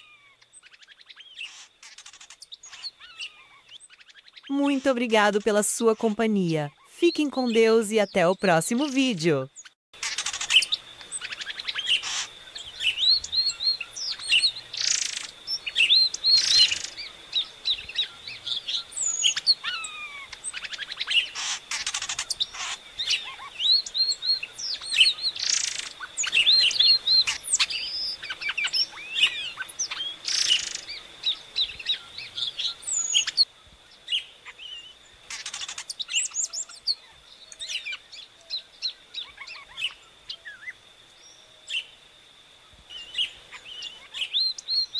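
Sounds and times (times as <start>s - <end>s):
bird singing whistled notes: 10.4s - 35.0s, 42.9s - 44.9s.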